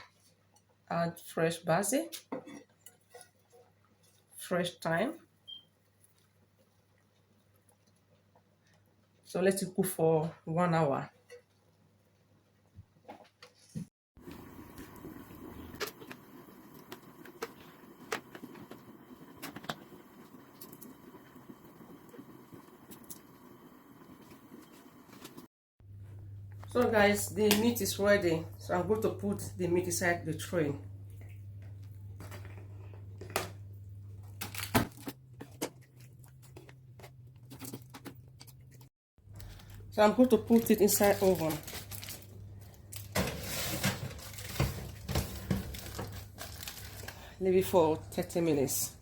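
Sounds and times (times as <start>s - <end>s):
pot bubbling on stove: 14.2s - 25.5s
knocks and rustles of handling: 31.2s - 39.9s, 41.0s - 47.2s.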